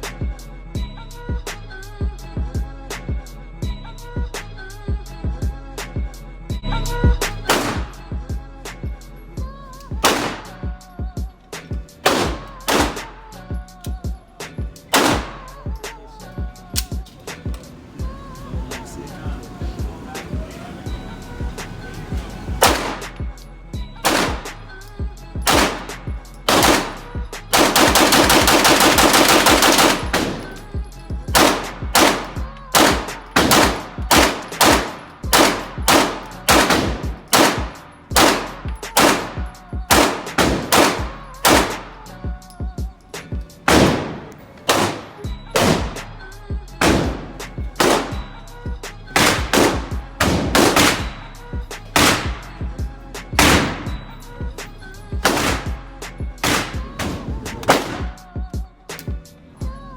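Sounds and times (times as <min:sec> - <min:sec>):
semi-automatic gunshots: 0:07.4 - 0:08.1, 0:10.0 - 0:10.8, 0:12.0 - 0:13.3, 0:14.9 - 0:15.8, 0:22.6 - 0:23.3, 0:24.0 - 0:24.7, 0:25.4 - 0:30.7, 0:31.3 - 0:42.1, 0:43.6 - 0:46.2, 0:46.8 - 0:48.4, 0:49.2 - 0:52.8, 0:53.4 - 0:54.2, 0:55.2 - 0:58.3.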